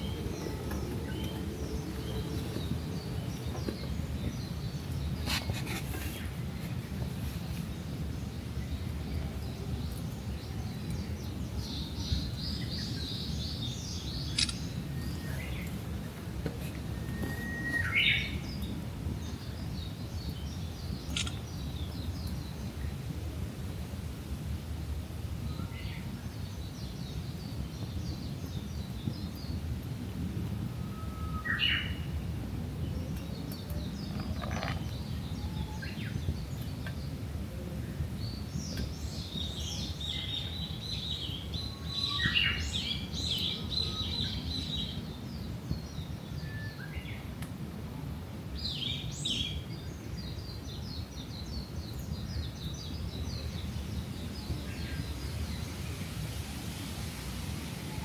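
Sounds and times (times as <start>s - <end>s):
wild birds chirping: 0.0s - 22.8s, 33.0s - 37.2s, 48.6s - 58.0s.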